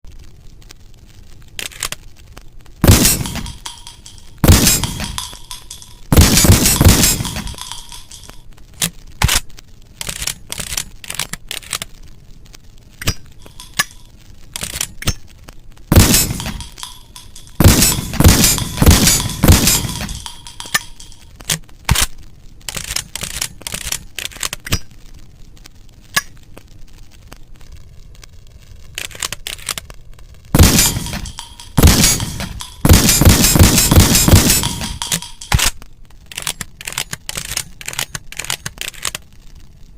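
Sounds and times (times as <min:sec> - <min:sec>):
shotgun shots: 0:02.8 - 0:08.4, 0:15.9 - 0:21.2, 0:30.6 - 0:35.7.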